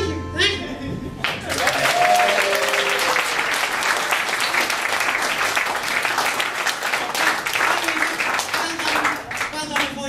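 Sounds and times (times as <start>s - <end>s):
audience applauding: 1.2s - 10.0s.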